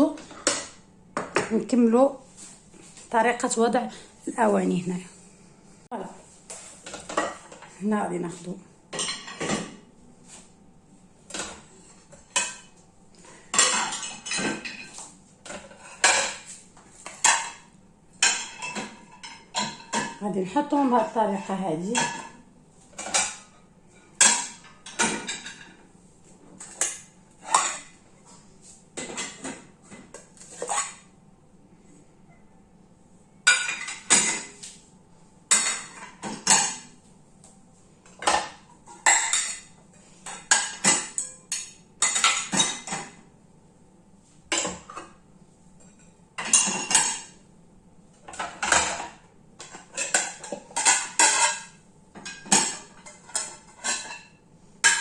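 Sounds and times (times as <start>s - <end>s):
dishes clattering: 0.1s - 1.6s, 6.8s - 7.8s, 8.9s - 9.9s, 11.3s - 20.2s, 21.0s - 25.8s, 26.5s - 28.0s, 29.0s - 31.2s, 33.4s - 34.7s, 35.5s - 37.0s, 38.0s - 43.3s, 44.5s - 45.2s, 45.8s - 47.4s, 48.2s - 55.0s.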